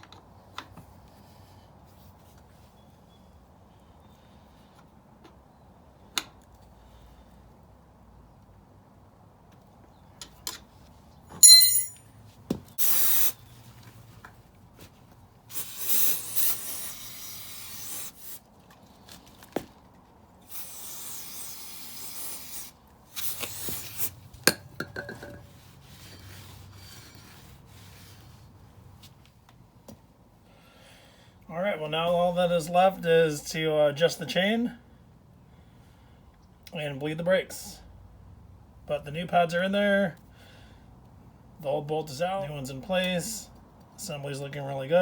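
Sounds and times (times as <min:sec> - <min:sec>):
metal tools clinking: 0:11.3 - 0:12.1
ringing ping of metal: 0:11.4 - 0:12.0
hissing bursts: 0:12.8 - 0:13.4, 0:15.5 - 0:18.4, 0:20.4 - 0:24.1.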